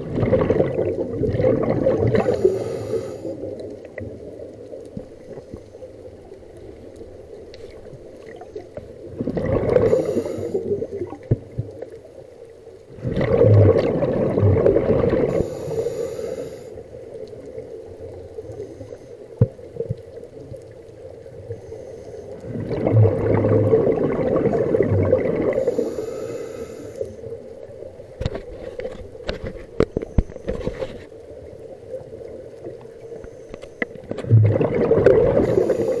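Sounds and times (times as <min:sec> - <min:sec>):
exhaled bubbles rushing: 0:00.0 - 0:04.4, 0:08.2 - 0:11.6, 0:12.9 - 0:15.5, 0:22.4 - 0:26.0, 0:34.0 - 0:36.0
regulator hiss: 0:02.3 - 0:03.4, 0:09.8 - 0:10.7, 0:15.3 - 0:16.8, 0:25.6 - 0:27.2, 0:35.4 - 0:36.0.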